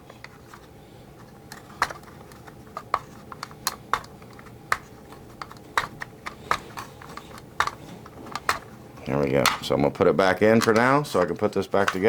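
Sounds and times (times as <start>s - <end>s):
plastic toy parts clicking: 1.5s - 8.6s.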